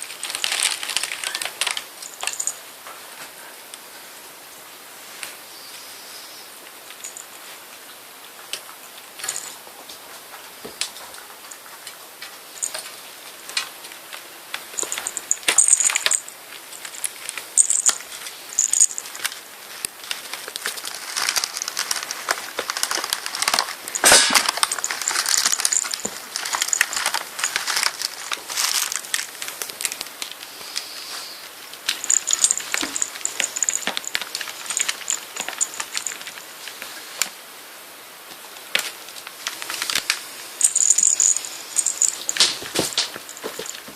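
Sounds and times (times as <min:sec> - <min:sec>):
kittens clicking and scraping: 0:00.0 - 0:02.6, 0:10.7 - 0:37.4, 0:38.7 - 0:43.9
bell toy jingling: 0:32.0 - 0:36.2, 0:40.6 - 0:42.4.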